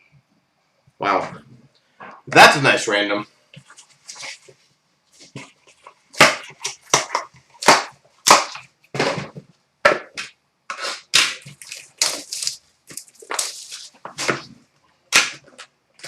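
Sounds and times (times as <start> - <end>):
cards and packaging rustling: 10.7 - 14.5.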